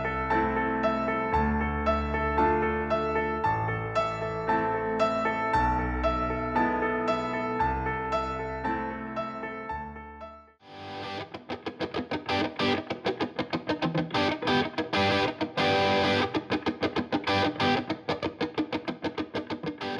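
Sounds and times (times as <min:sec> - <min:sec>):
distorted electric guitar music: 0:10.7 - 0:19.9.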